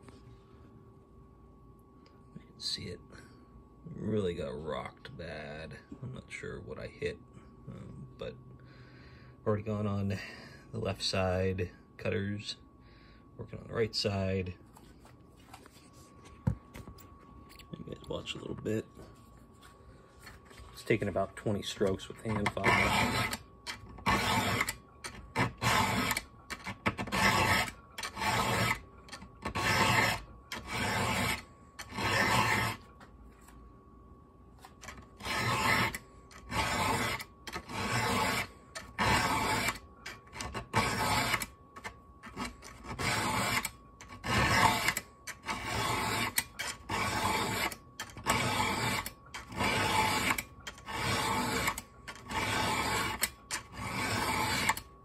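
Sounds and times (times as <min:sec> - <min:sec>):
hand file rasping on chainsaw chain: 0:22.2 - 0:24.8, 0:25.4 - 0:28.8, 0:29.5 - 0:32.8, 0:35.2 - 0:41.5, 0:42.3 - 0:54.8.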